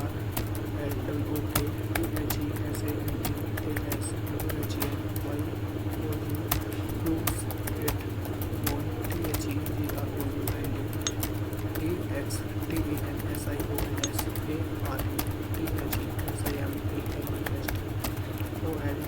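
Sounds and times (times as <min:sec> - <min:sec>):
steady low hum: 0:00.0 - 0:19.0
keyboard keystroke clicks: 0:06.5 - 0:11.4, 0:12.7 - 0:18.6.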